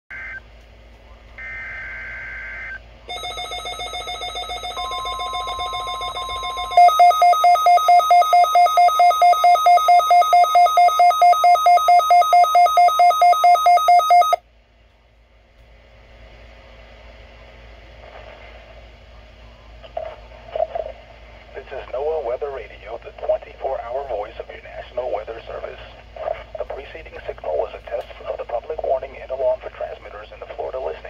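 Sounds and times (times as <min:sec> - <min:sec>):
rapid pulsing alarm beeps: 0:01.4 - 0:14.4
steady high tone: 0:01.4 - 0:14.4.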